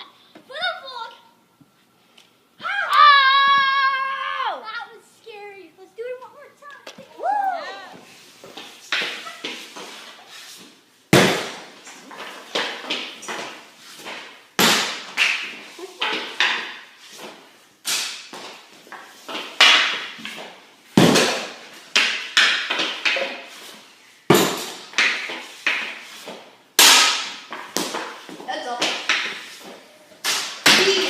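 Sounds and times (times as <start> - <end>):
sharp knocks and clattering: 24.3 - 31.0.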